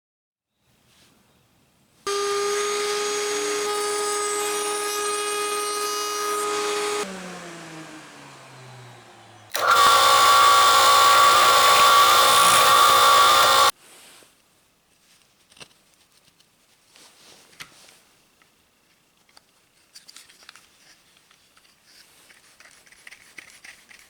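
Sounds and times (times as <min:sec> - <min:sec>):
electric power tool whining: 0:02.1 - 0:13.7.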